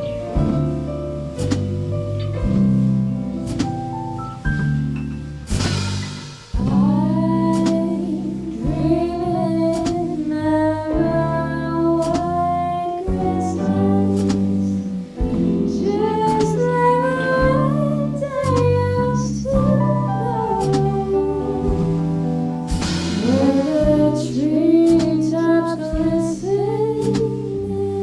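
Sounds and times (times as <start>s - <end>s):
jazz combo playing: 0.0s - 28.0s
drum hits: 0.4s - 8.0s, 21.6s - 25.2s.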